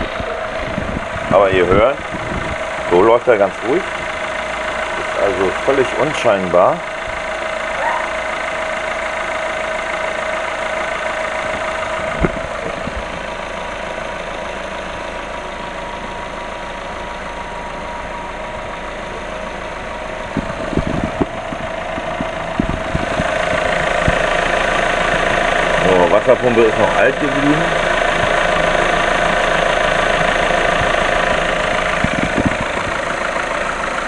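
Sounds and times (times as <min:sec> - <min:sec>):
car engine idling: 0:00.0 - 0:34.0.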